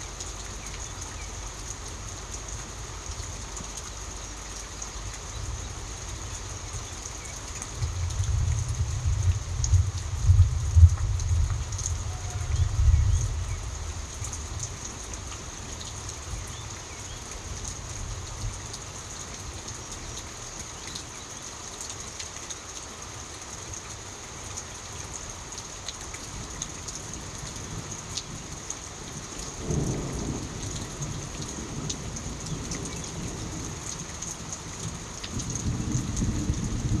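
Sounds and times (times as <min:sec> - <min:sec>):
steady rain falling: 0:00.0 - 0:37.0
sharp drip ticks: 0:29.3 - 0:36.4.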